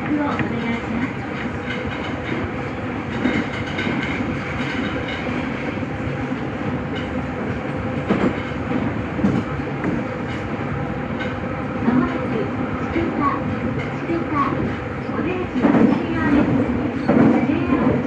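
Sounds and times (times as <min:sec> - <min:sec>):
track clacks: 0:00.0 - 0:18.0
train running through tunnel: 0:00.0 - 0:18.0.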